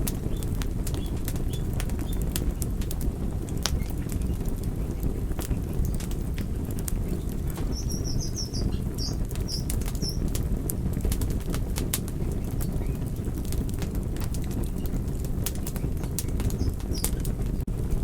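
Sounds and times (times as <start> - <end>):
campfire flames rumbling: 0.0 - 18.0
wood crackling and popping: 0.0 - 18.0
faint high chirps: 7.6 - 10.2.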